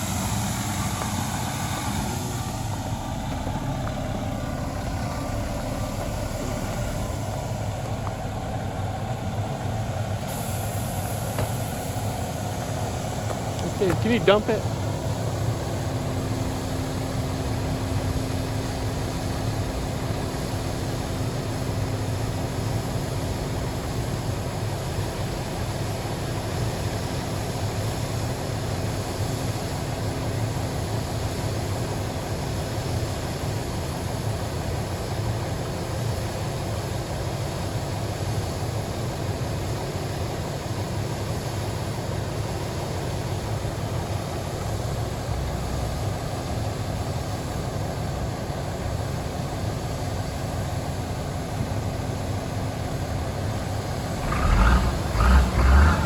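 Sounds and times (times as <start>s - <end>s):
faint steady whine: 0.0s - 56.0s
heavy engine rumbling: 0.0s - 56.0s.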